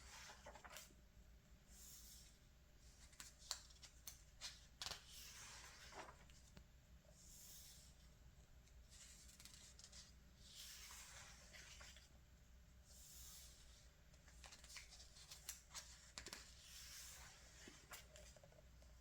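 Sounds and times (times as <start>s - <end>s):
magazine pages rustling: 0.0s - 0.9s, 3.0s - 6.6s, 8.9s - 12.1s, 14.3s - 18.6s
paper clicks: 3.0s - 5.2s.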